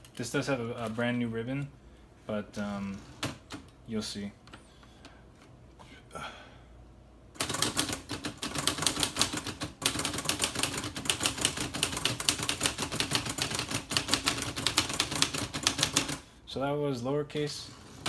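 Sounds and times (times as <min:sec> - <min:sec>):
manual typewriter typing: 0:07.4 - 0:16.2.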